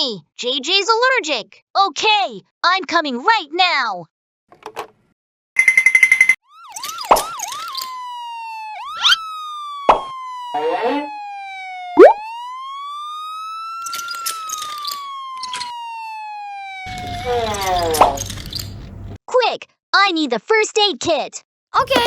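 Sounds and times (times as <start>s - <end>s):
ambulance siren wailing: 6.4s - 18.3s.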